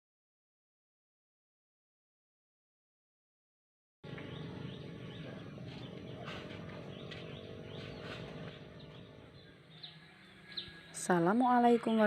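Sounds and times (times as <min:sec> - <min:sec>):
steady low hum: 0:04.0 - 0:11.4
birds chirping: 0:04.0 - 0:12.0.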